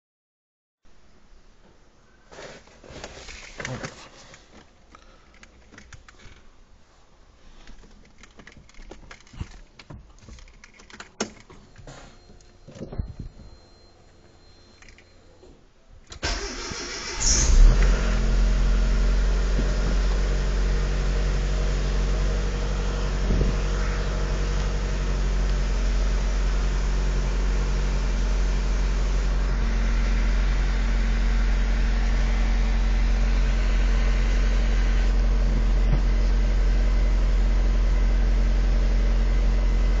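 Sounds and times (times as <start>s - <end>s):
car engine cranking and idling: 16.1s - 40.0s.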